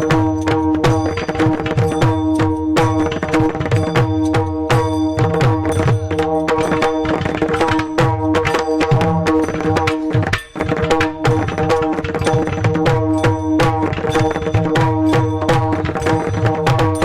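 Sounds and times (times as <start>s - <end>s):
hand drum rhythm: 0.0s - 17.0s.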